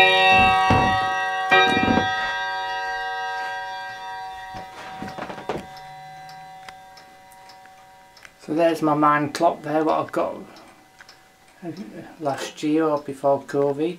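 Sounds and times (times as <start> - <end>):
soft knocks: 0.0 - 2.2
clock bell ringing: 0.0 - 12.8.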